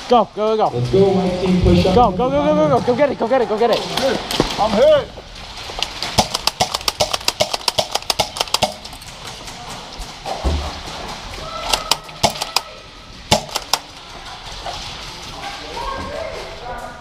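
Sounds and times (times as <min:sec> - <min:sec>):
airsoft guns firing full auto: 0:06.2 - 0:09.0, 0:11.6 - 0:12.7, 0:13.3 - 0:13.9.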